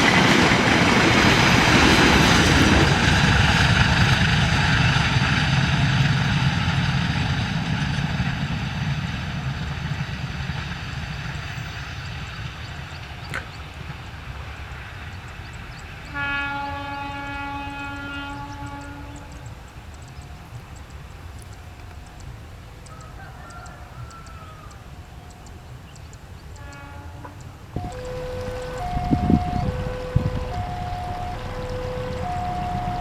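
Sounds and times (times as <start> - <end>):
train rumble and wheel noise: 0.0 - 33.0
train horn chord: 16.1 - 19.6, 26.6 - 33.0.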